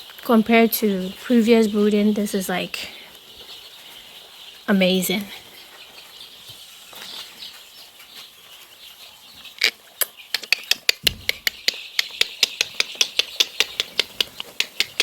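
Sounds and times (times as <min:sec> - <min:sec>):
chicks cheeping: 0:00.0 - 0:15.0
sharp taps: 0:10.7 - 0:15.0.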